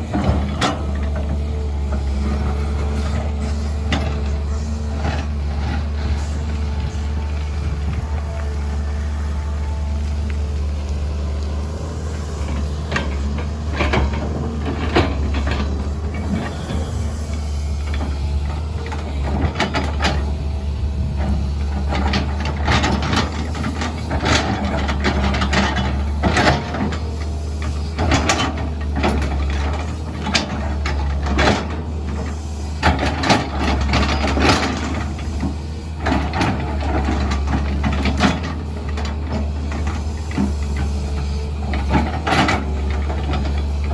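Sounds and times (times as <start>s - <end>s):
diesel engine running under load: 0.0s - 43.9s
knocks clanks and scrapes: 12.1s - 20.4s, 21.2s - 43.9s.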